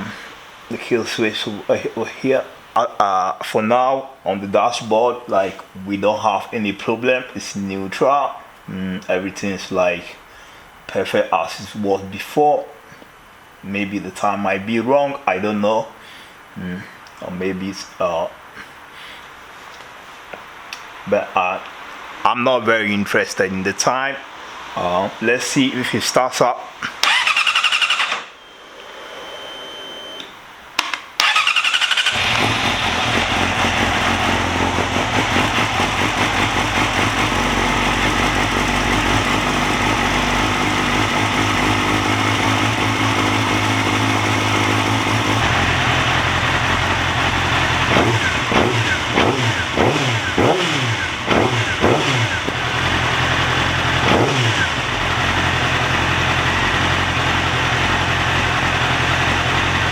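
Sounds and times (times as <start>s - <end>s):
motorcycle engine starting: 27.0s - 28.4s, 31.2s - 59.9s
motorcycle engine idling: 31.3s - 59.9s.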